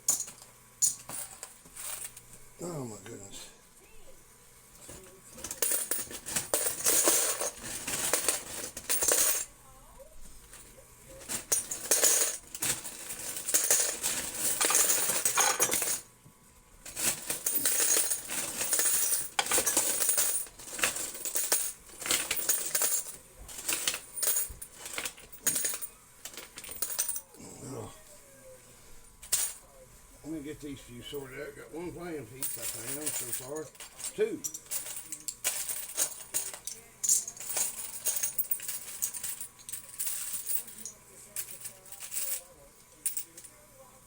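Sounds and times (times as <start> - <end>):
coins clattering and jingling: 0.0 - 2.3, 4.8 - 9.5, 10.5 - 16.1, 16.8 - 27.3, 29.2 - 29.6, 32.4 - 43.5.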